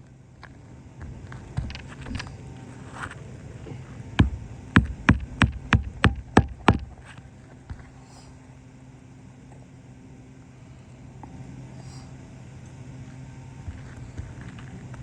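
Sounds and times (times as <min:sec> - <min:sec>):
sharp hammer strikes: 0:04.2 - 0:07.0.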